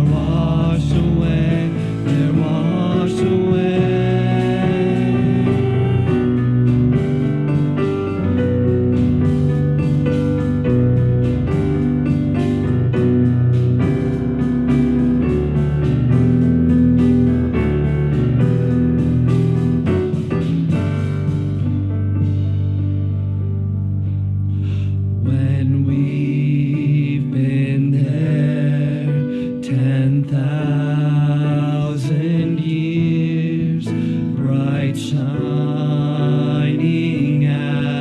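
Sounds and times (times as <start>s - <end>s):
drums in a steady beat: 0.0s - 23.3s
band playing: 0.0s - 25.7s
keyboard chords: 0.0s - 38.0s.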